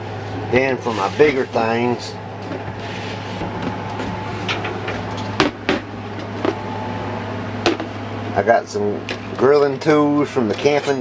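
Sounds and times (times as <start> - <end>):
air conditioner humming: 0.0 - 11.0.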